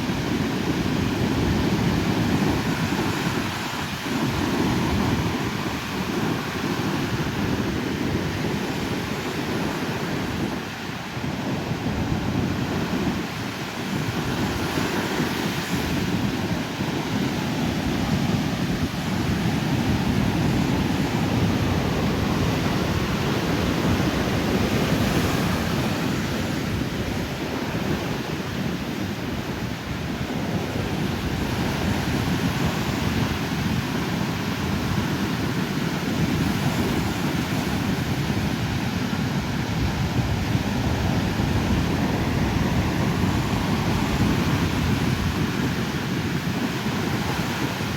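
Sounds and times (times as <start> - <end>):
wind buffeting microphone: 0.0 - 47.9
ocean surf breaking: 11.7 - 47.9.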